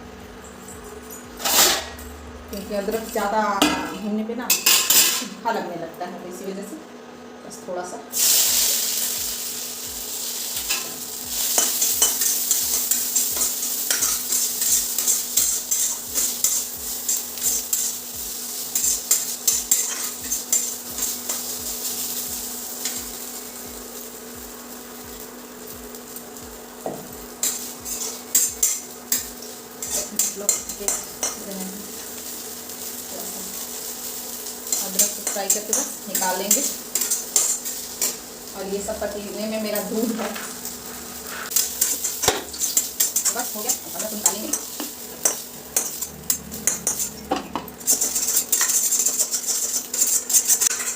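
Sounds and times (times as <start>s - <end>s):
ginger sizzling in hot fat: 0.0s - 50.9s
utensil stirring and clinking on pan: 10.7s - 22.2s, 26.9s - 38.4s, 41.4s - 50.9s.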